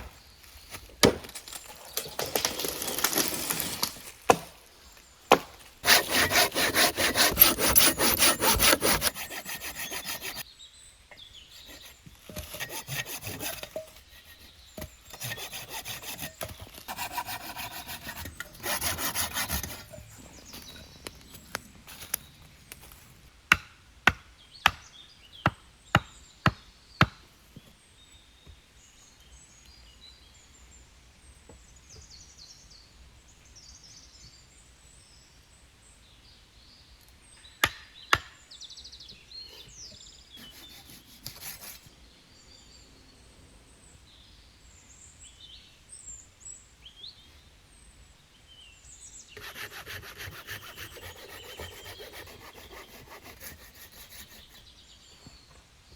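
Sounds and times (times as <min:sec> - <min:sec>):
birds chirping: 0:00.0 - 0:23.3, 0:38.0 - 0:55.9
hand saw cutting wood: 0:01.9 - 0:04.5, 0:05.3 - 0:10.4, 0:11.5 - 0:22.3, 0:39.5 - 0:41.9, 0:49.4 - 0:54.7.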